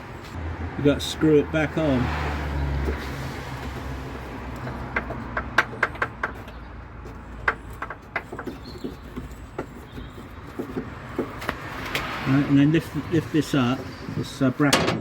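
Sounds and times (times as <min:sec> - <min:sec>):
metallic clicks and knocks: 0:04.5 - 0:12.1, 0:14.7 - 0:15.0.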